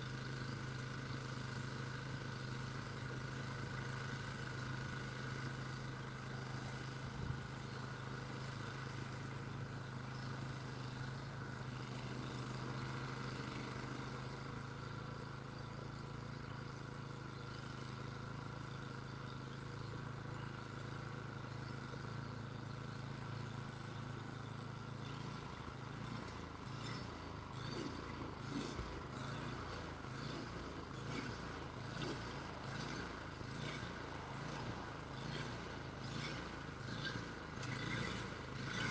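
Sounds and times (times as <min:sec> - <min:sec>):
snow-clearing machine engine humming: 0:00.0 - 0:38.9.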